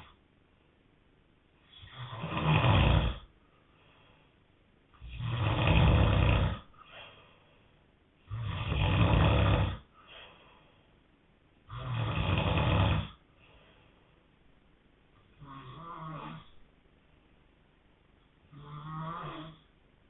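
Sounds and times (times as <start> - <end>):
man snoring: 1.7 - 3.3, 5.0 - 6.7, 8.3 - 9.9, 11.7 - 13.2, 15.4 - 16.6, 18.5 - 19.7
faint short breath: 6.8 - 7.9, 10.0 - 11.0.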